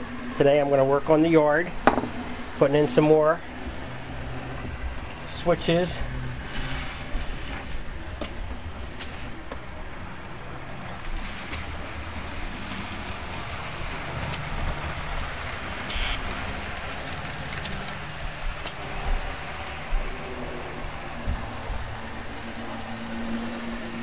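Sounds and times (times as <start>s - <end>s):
model train rumble on track: 1.6s - 24.0s
sharp clicks: 15.8s - 16.3s.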